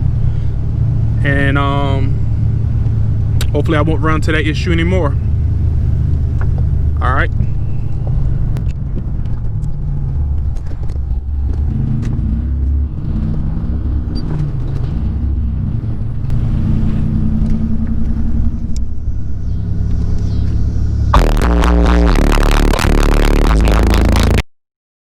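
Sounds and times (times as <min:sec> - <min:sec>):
car engine rumble from inside: 0:00.0 - 0:23.4
music: 0:21.1 - 0:24.4.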